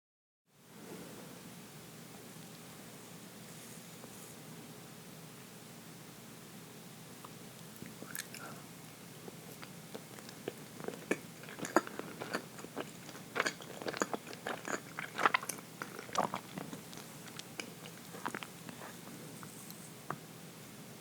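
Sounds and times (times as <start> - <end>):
person chewing cake: 7.6 - 20.2.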